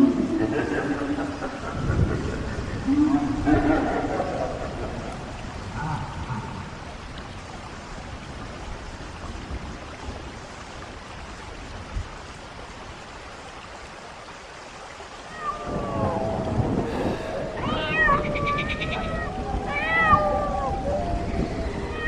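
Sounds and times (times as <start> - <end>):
falling water hiss: 0.0 - 22.0
falling wail: 15.4 - 22.0.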